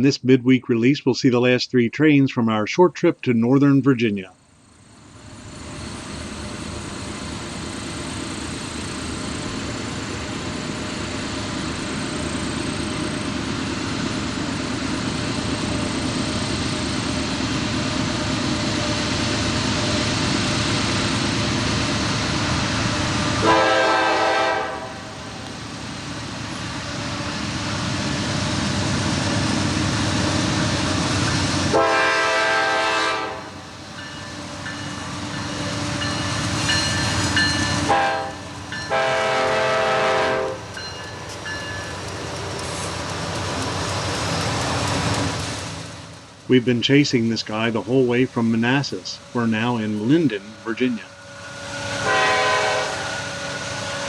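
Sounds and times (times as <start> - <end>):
train rumble and rail noise: 4.2 - 54.0
locomotive horn blasts: 23.2 - 25.5, 31.7 - 33.6, 37.7 - 40.7, 50.6 - 54.0.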